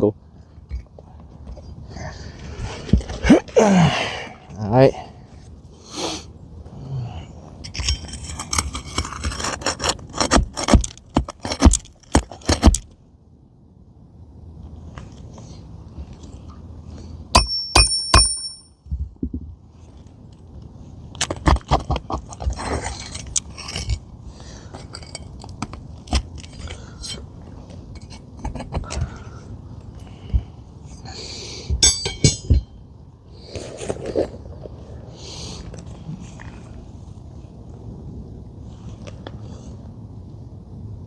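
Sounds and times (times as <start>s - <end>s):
tools clicking and scraping: 7.6s - 12.9s, 21.2s - 29.2s, 31.8s - 32.8s
rustling of shingles: 7.6s - 13.0s, 19.0s - 37.6s.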